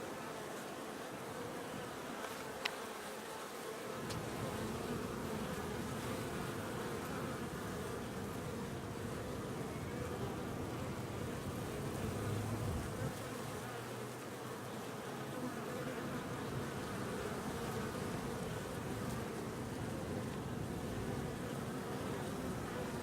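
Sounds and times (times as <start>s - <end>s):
honey bees buzzing: 0.0s - 23.0s.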